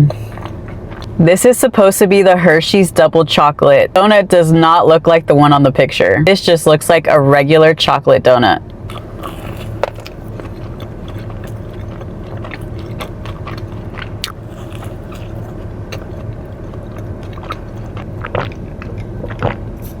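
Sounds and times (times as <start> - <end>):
biting and chewing donut: 0.0 - 1.2, 8.9 - 20.0
wet mouth clicks and smacks: 8.9 - 20.0.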